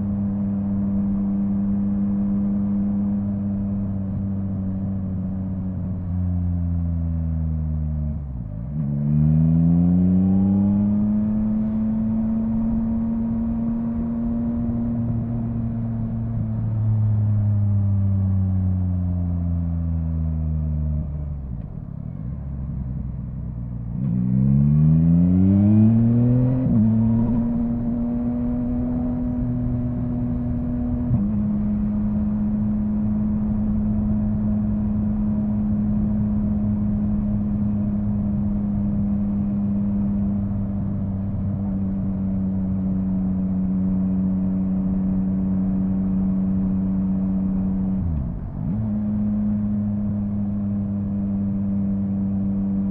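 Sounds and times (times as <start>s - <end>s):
motorcycle engine revving: 24.0s - 52.9s.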